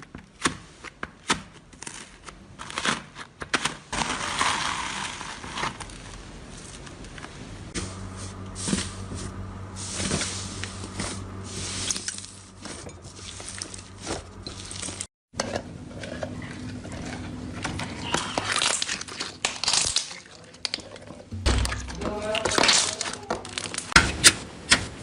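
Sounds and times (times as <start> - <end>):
low steady hum: 6.4 - 24.2.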